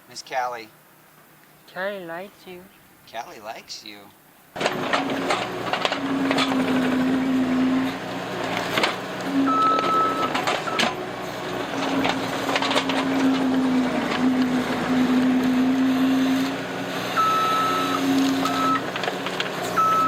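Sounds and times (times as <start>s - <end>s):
knocks and clatter of machine: 4.6s - 7.0s, 9.8s - 11.0s, 11.8s - 14.2s
diesel engine running: 4.6s - 20.0s
backup alarm beep: 9.4s - 11.0s, 17.2s - 18.9s, 19.8s - 20.0s.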